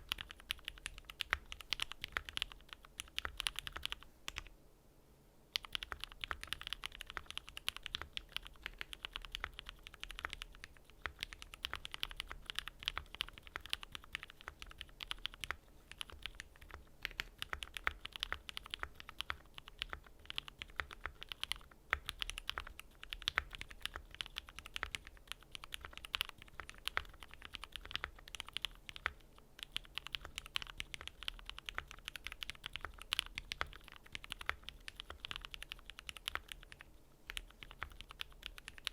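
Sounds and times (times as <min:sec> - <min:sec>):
typing on mechanical keyboard: 0:00.0 - 0:04.5, 0:05.5 - 0:38.9.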